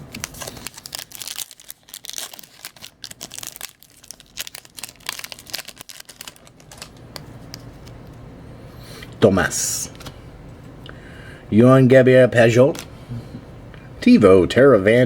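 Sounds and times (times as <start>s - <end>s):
foil wrapper crinkling and tearing: 0.0s - 7.0s.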